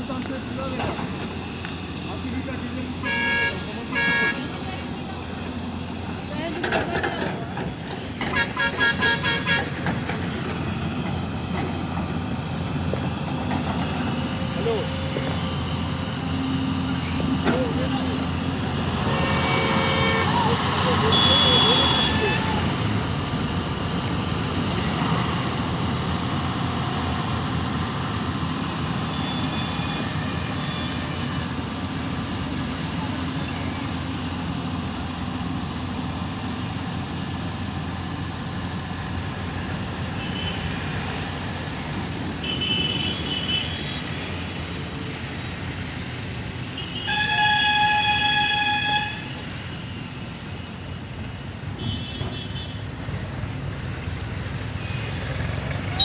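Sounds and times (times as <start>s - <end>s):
traffic rumble: 0.0s - 56.0s
vehicle horn blaring: 3.0s - 4.6s, 8.3s - 9.7s, 19.0s - 22.6s, 42.4s - 44.0s, 46.8s - 49.5s, 51.8s - 52.8s.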